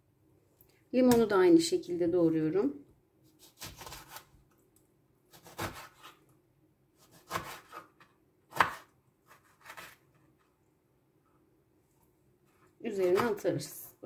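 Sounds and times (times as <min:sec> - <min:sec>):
knife chopping lemon: 0:05.3 - 0:06.1, 0:07.0 - 0:10.0.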